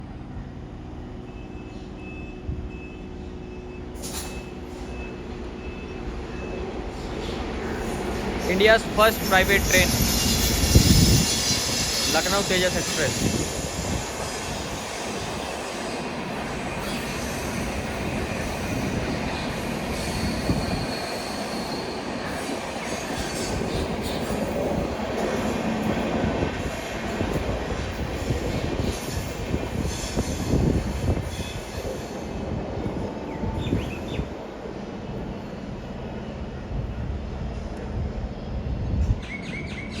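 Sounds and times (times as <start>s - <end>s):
train rumbling through station: 0.0s - 40.0s
short burst of hiss: 4.0s - 5.0s.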